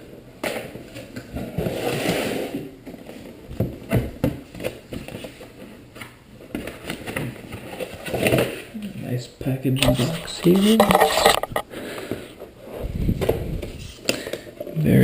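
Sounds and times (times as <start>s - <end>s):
packaging scraping rustle: 9.8s - 11.6s.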